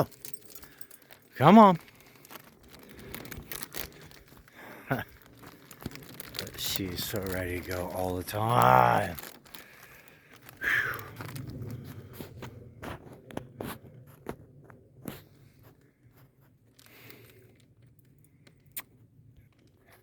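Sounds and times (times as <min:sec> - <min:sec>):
footsteps crunching: 0:00.3 - 0:15.8.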